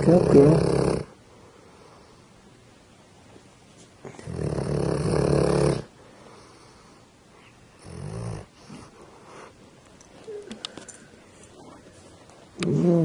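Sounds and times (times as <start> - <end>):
dog snoring: 0.0 - 1.2, 4.0 - 5.9, 7.8 - 9.5, 12.6 - 13.0.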